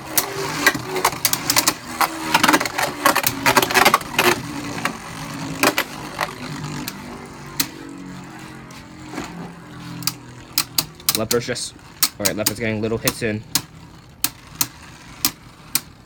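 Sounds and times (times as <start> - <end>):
tops clicking and knocking: 0.0 - 7.8, 10.0 - 16.0
spinning tops whirring: 0.0 - 16.0.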